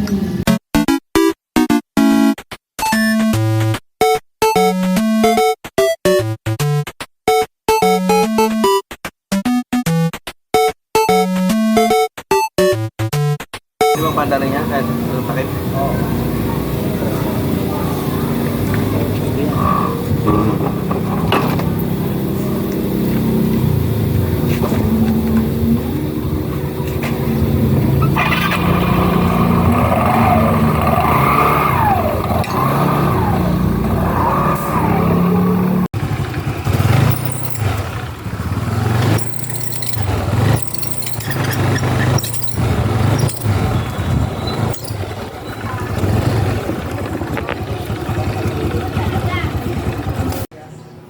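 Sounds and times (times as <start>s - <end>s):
small scooter engine running: 14.0s - 50.5s.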